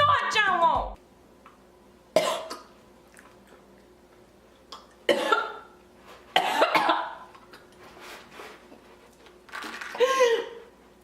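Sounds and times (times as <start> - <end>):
woman coughing: 2.2 - 2.7, 5.1 - 5.7, 6.4 - 7.2.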